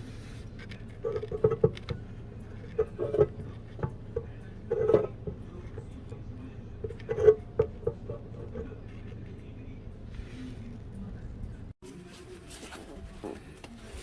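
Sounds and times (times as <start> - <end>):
faint low hum: 0.0 - 14.0
hard parts knocking and clanking: 0.6 - 6.1, 6.8 - 8.8.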